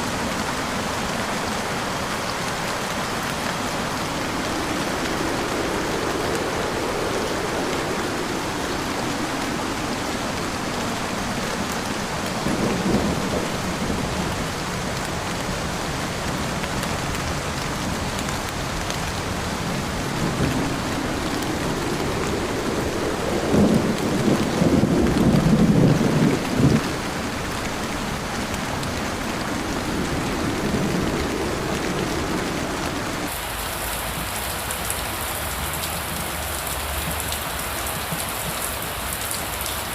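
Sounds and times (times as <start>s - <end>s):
heavy rain on a car: 0.0s - 39.9s.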